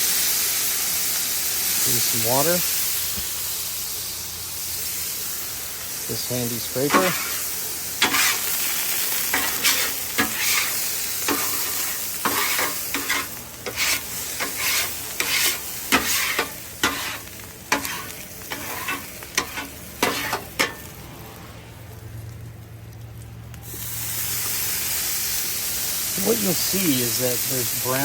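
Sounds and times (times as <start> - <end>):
water sizzling on hot steel: 0.0 - 21.0, 21.9 - 28.0
metal scraper on griddle: 6.8 - 20.9.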